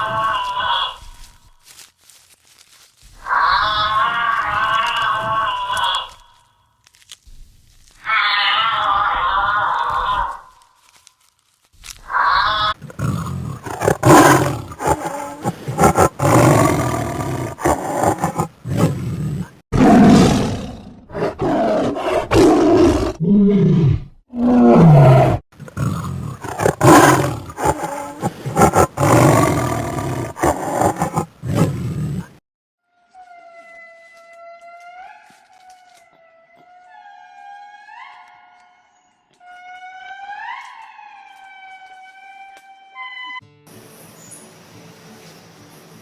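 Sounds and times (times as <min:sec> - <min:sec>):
large animal roaring and growling: 0:12.1 - 0:32.4.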